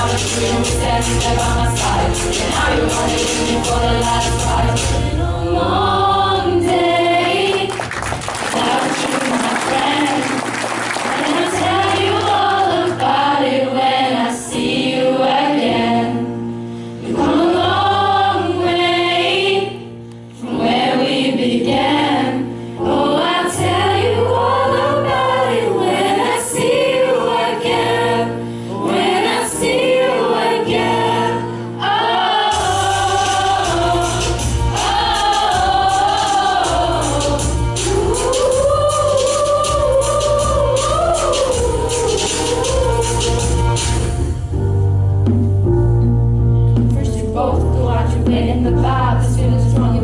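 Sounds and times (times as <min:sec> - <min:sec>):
band accompaniment: 0:00.0 - 0:05.9, 0:32.5 - 0:47.4
choir singing pop song: 0:00.0 - 0:44.4, 0:47.0 - 0:50.0.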